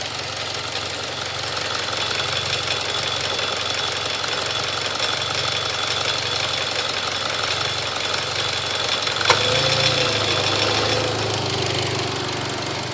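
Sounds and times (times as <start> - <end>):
car engine idling with ticking: 0.0 - 12.9.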